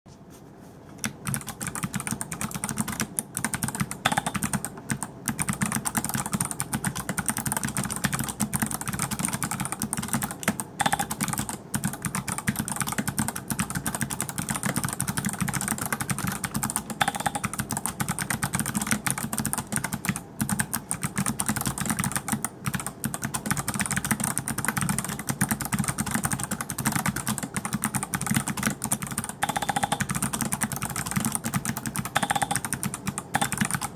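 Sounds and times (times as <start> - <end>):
fast typing on mechanical keyboard: 1.0 - 33.9.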